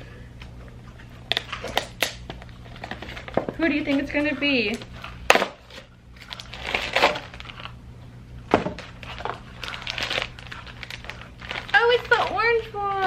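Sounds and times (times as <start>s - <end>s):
package crinkling and rustling: 1.0s - 7.8s, 8.5s - 13.0s.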